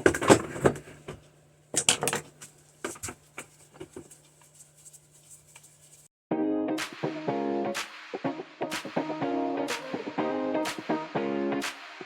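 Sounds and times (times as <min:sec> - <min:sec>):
music: 0:06.3 - 0:12.0.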